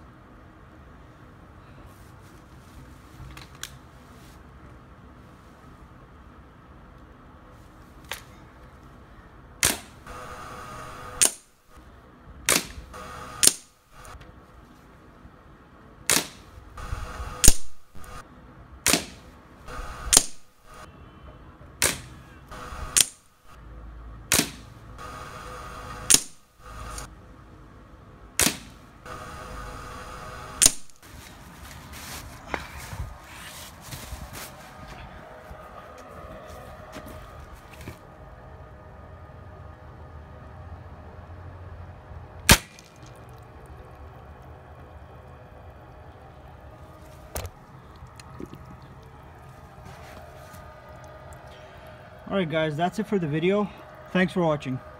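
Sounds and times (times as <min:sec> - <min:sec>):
air rifle firing: 0:09.6 - 0:11.5, 0:12.5 - 0:14.2, 0:16.1 - 0:18.2, 0:18.9 - 0:19.2, 0:19.8 - 0:20.8, 0:21.8 - 0:23.3, 0:24.3 - 0:27.1, 0:28.4 - 0:29.6, 0:30.4 - 0:31.0, 0:42.5 - 0:43.0.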